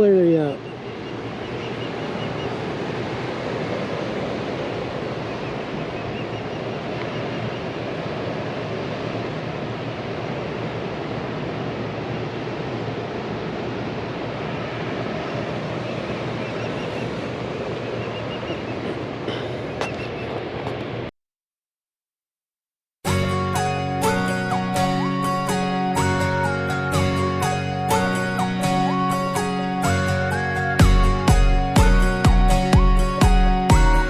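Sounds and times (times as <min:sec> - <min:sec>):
water rushing below dam: 0:01.2 - 0:21.1.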